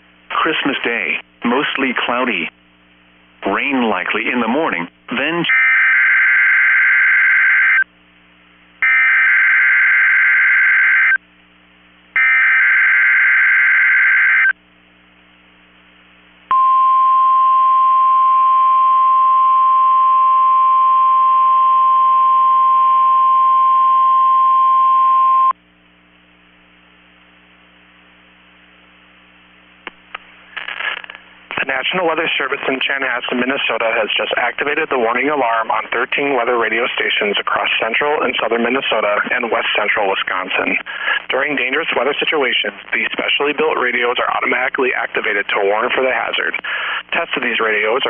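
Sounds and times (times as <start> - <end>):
steady alarm tone: 5.5 - 7.9, 8.8 - 11.2, 12.2 - 14.6.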